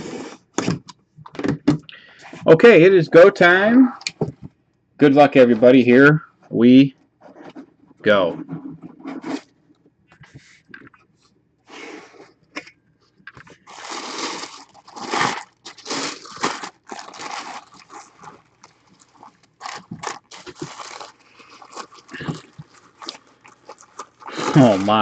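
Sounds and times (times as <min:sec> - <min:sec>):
cardboard packaging rustling: 0:13.4 - 0:25.0.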